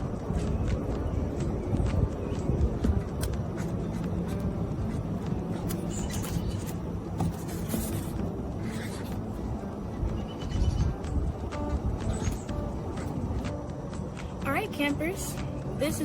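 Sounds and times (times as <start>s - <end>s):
marker pen scratching on paper: 3.2s - 9.4s.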